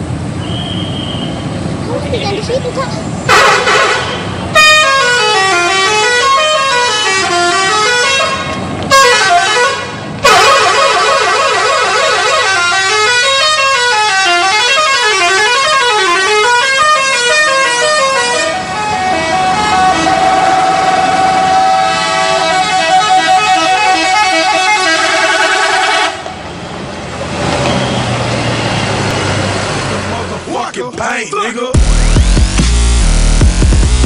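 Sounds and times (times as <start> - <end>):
bus musical horn melody: 3.3 - 26.4.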